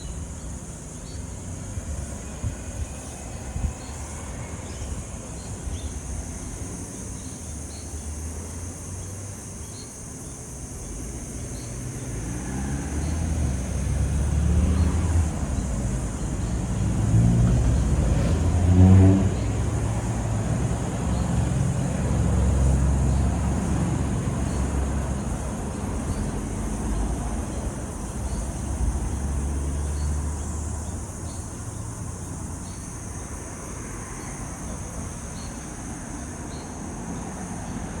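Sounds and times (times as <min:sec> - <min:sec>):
vehicles driving past: 0:10.8 - 0:38.0.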